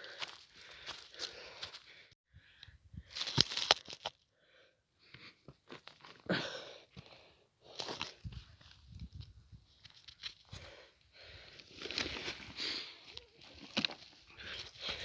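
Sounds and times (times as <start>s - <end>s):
footsteps on rocky ground: 0.0s - 2.0s, 3.1s - 4.2s, 5.4s - 6.3s
person breathing hard: 0.0s - 3.3s, 4.3s - 5.5s, 10.5s - 13.1s, 14.3s - 15.0s.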